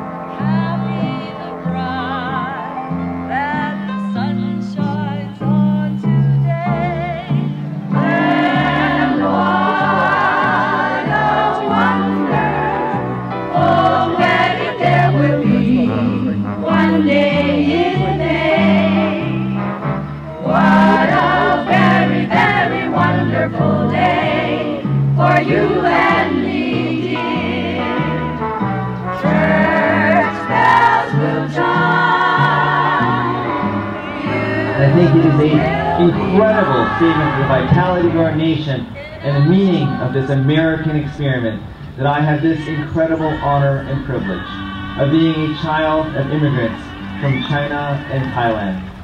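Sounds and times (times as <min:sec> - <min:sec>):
bass line: 0:00.0 - 0:49.0
instrumental accompaniment: 0:00.0 - 0:49.0
woman singing slow song: 0:00.3 - 0:07.6
group singing in harmony: 0:00.5 - 0:49.0.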